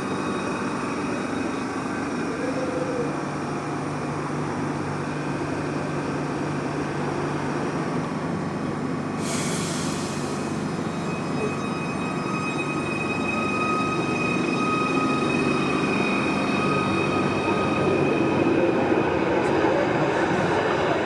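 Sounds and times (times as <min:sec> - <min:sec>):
electric train humming and whining: 0:00.0 - 0:21.0
loud hiss: 0:09.2 - 0:10.7.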